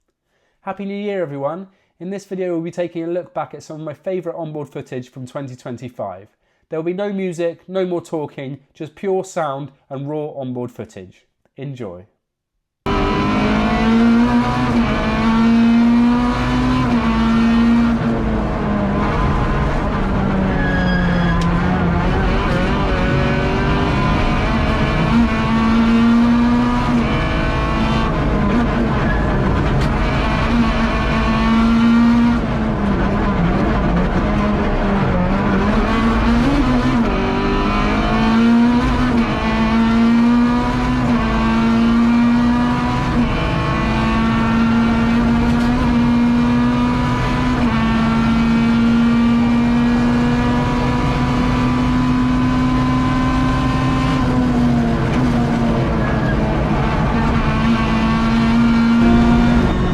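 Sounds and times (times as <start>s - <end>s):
rally car engine at full throttle: 12.8s - 59.9s.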